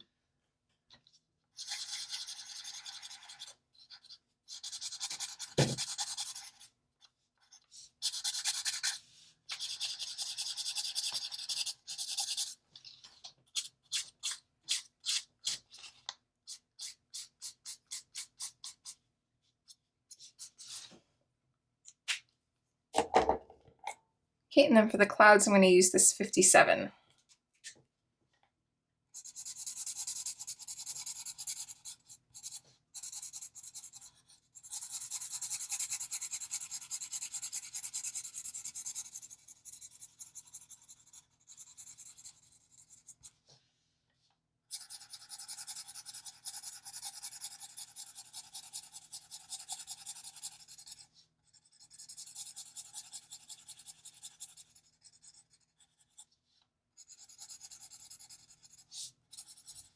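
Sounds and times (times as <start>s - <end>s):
marker scribbling on paper: 1.6s - 6.6s, 8.0s - 12.6s, 29.2s - 43.3s, 44.7s - 56.3s, 57.0s - 59.9s.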